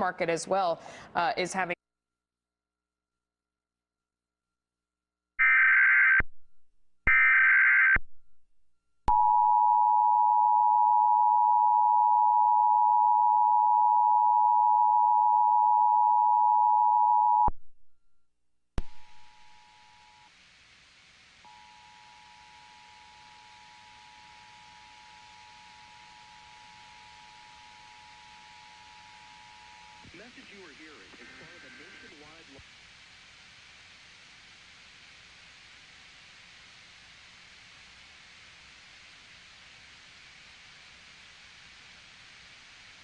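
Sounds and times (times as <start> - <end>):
hiss: 30.2 - 43.0.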